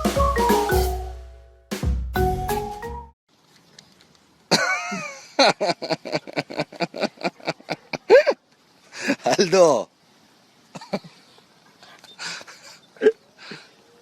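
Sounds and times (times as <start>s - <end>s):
music: 0.0s - 3.2s.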